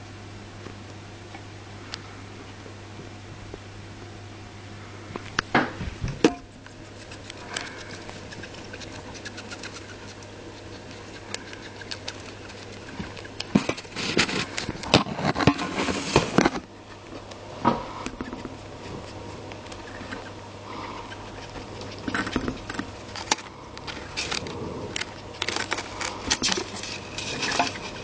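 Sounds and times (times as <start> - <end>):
gerbil scratching and scrabbling: 6.5 - 28.0
gerbil wet sniffly breathing: 6.7 - 13.3, 20.6 - 22.0.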